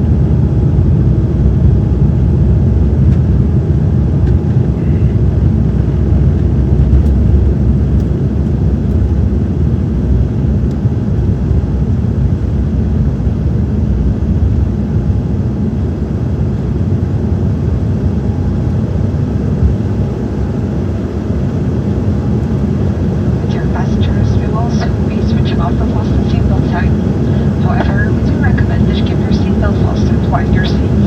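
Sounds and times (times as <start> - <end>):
jet engines roaring in cabin: 0.0 - 31.0
airflow noise: 22.6 - 31.0.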